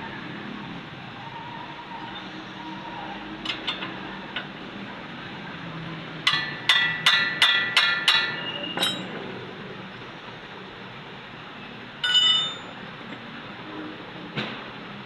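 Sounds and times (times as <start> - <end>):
hammer striking metal: 6.3 - 9.1, 12.0 - 12.8.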